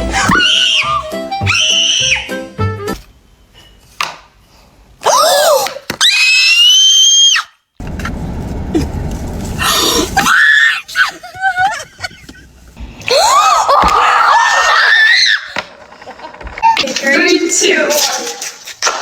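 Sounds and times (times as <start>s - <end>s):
rumbling noise: 7.8s - 17.7s.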